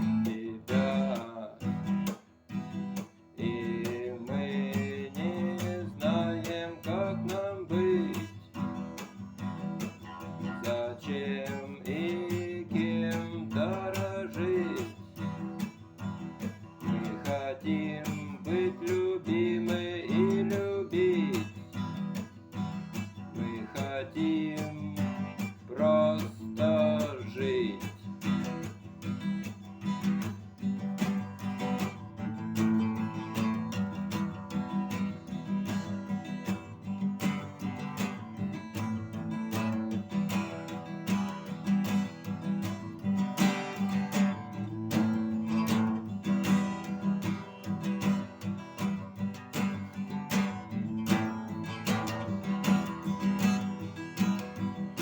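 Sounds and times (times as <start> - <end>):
person singing: 0.0 - 1.9, 3.3 - 8.7, 10.4 - 15.4, 16.8 - 21.8, 23.3 - 28.1
acoustic guitar strumming: 0.0 - 55.0.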